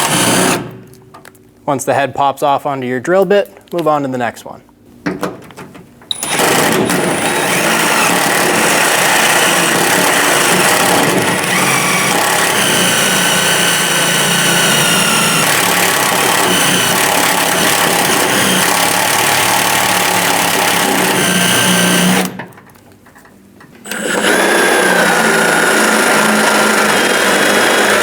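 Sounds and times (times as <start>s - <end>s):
electric drill drilling rivets: 0.0s - 0.8s, 6.1s - 22.4s, 23.8s - 28.0s.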